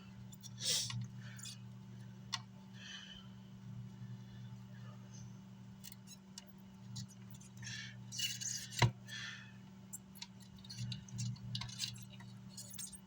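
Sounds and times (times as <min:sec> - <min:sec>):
steady low hum: 0:00.0 - 0:13.0
tools scraping and rustling: 0:06.9 - 0:08.9, 0:10.2 - 0:13.0.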